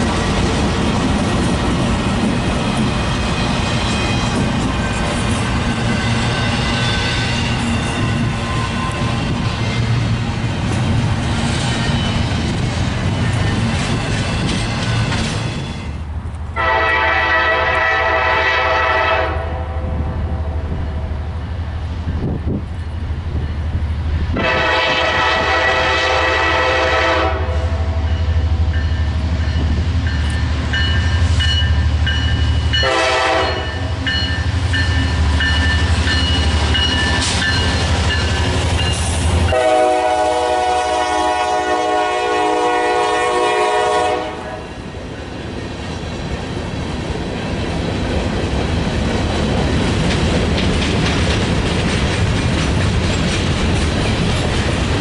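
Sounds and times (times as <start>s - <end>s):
train wheels clickety-clack: 0.0s - 16.5s, 28.1s - 44.2s, 44.8s - 55.0s
diesel locomotive rumble: 0.0s - 55.0s
locomotive air horn blasts: 16.6s - 19.9s, 24.4s - 27.9s, 32.7s - 33.9s, 39.5s - 44.7s.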